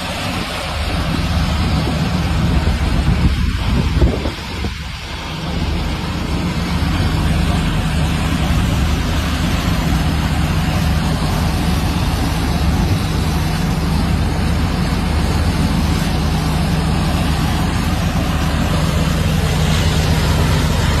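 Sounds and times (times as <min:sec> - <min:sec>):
drilling machine running: 0:00.0 - 0:21.0.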